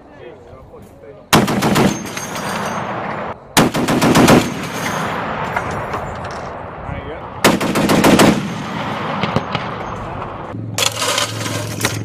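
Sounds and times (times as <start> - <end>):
machine gun firing bursts: 1.4 - 2.1, 3.6 - 4.9, 7.4 - 9.6.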